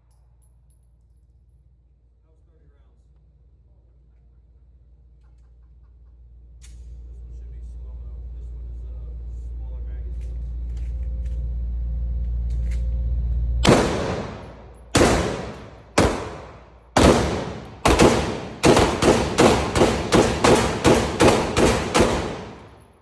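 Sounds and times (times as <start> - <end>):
low rumble: 11.0 - 22.8
rifle shots echoing: 13.6 - 22.9.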